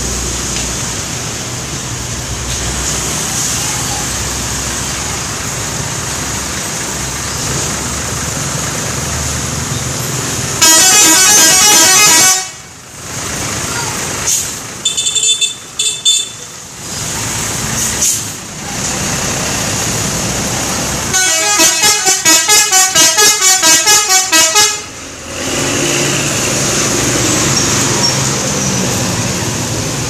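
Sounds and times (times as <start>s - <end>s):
traffic and engine noise: 0.0s - 30.0s
multi-tone bus horns: 10.4s - 12.8s, 14.8s - 16.5s, 21.0s - 26.4s.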